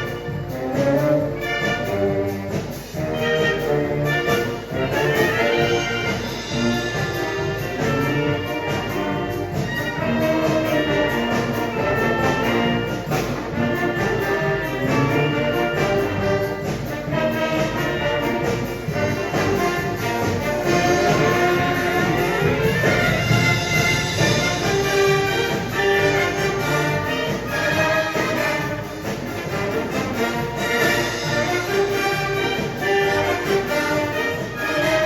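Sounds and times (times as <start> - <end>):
brass melody: 0.0 - 35.0
steady drum beat: 0.0 - 35.0.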